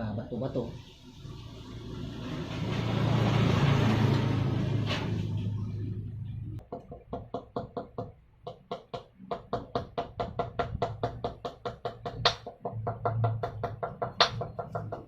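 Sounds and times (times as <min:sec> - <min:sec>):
hammer tapping on metal: 0:06.6 - 0:15.0.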